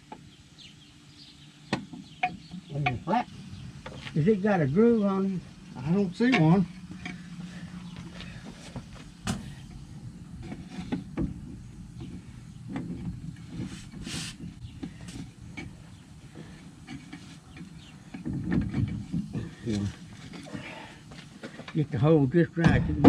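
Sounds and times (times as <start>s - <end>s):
low steady hum: 0.0s - 23.0s
brief hiss: 14.0s - 14.4s.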